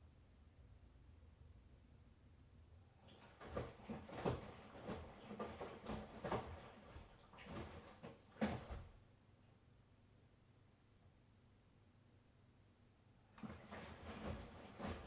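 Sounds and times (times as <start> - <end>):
laundry tumbling soft thumps: 3.1 - 9.0, 13.4 - 15.0
washing machine drum turning: 13.4 - 15.0.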